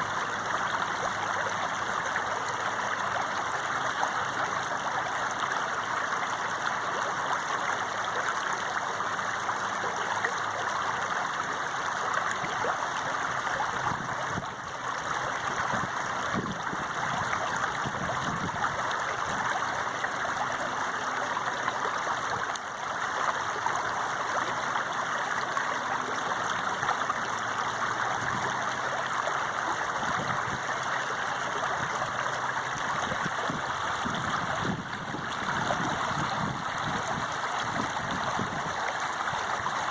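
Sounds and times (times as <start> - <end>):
flowing water rushing: 0.0 - 39.9.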